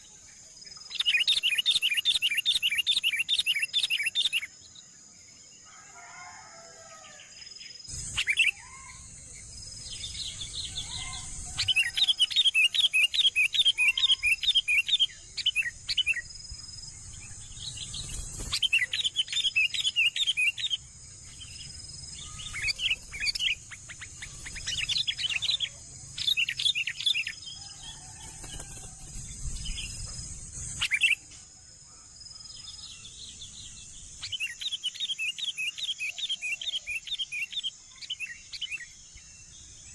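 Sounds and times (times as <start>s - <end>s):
insects droning: 0.0s - 39.9s
nestlings chirping: 7.9s - 27.4s.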